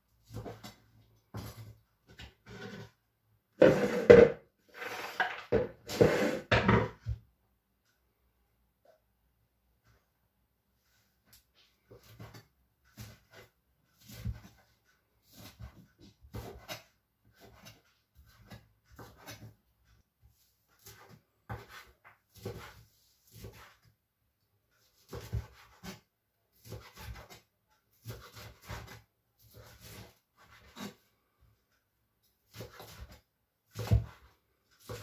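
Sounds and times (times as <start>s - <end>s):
knife chopping on cutting board: 12.0s - 14.6s, 15.3s - 19.5s, 20.8s - 23.9s, 24.9s - 26.0s, 26.6s - 27.4s, 28.0s - 30.9s, 32.5s - 35.0s.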